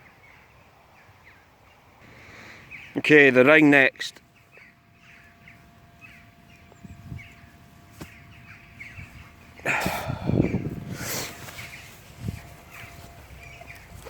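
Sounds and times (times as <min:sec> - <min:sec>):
crows cawing: 0:04.4 - 0:11.8.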